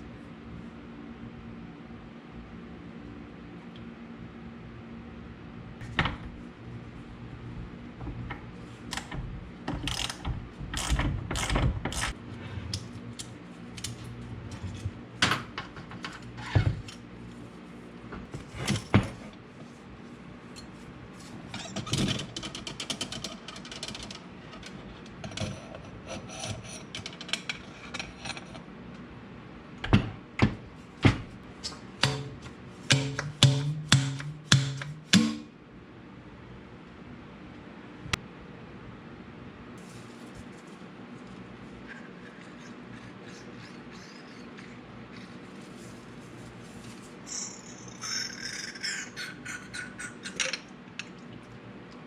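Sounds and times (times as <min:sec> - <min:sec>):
steady low hum: 0:00.0 - 0:22.8, 0:24.2 - 0:52.0.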